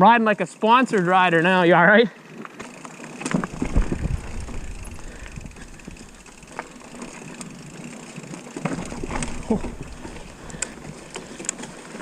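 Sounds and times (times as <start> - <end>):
bike rolling over dirt trail: 0.9 - 12.0
wind on microphone: 3.5 - 6.1.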